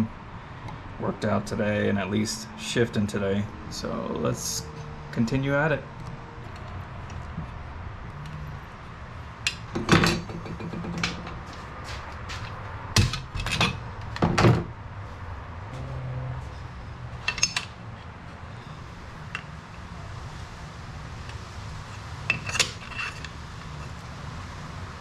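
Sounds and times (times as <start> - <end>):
metal tools knocking and clunking: 9.5 - 11.5, 13.0 - 14.7, 17.2 - 17.8, 22.3 - 23.9.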